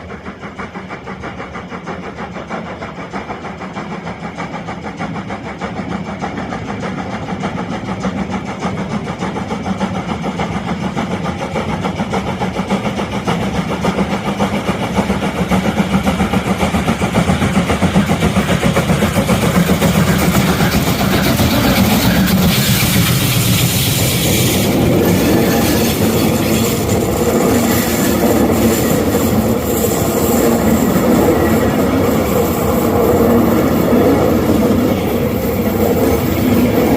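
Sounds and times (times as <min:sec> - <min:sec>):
diesel locomotive engine throbbing: 0:00.0 - 0:36.9.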